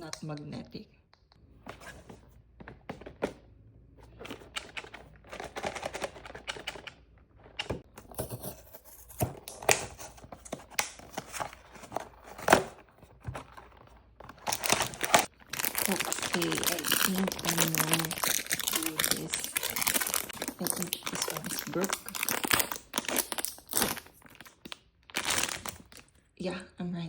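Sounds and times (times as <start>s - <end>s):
cardboard and plastic crinkling: 7.5s - 26.2s.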